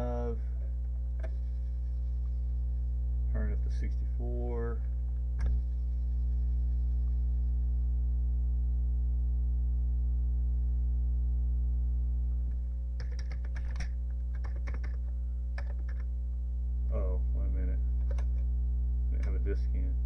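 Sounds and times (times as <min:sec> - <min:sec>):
low electrical hum: 0:00.0 - 0:20.0
computer keyboard keystrokes: 0:13.0 - 0:16.1, 0:18.0 - 0:18.4.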